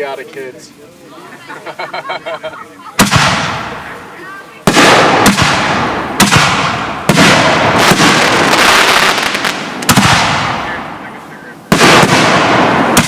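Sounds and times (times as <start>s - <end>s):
firework crackle and echo: 0.0s - 13.0s
firework bangs: 2.8s - 13.0s.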